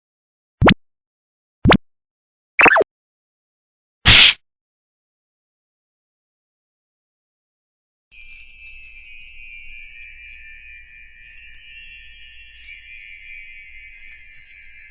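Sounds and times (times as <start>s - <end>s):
tinkling bells and chimes: 8.1s - 14.9s.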